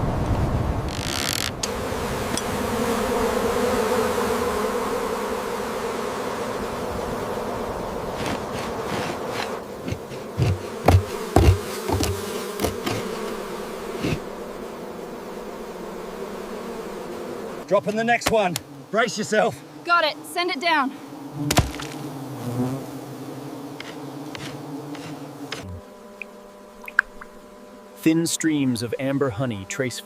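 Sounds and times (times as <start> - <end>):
bees buzzing: 0.0 - 30.0
dull knocks: 8.2 - 13.4, 21.4 - 22.0.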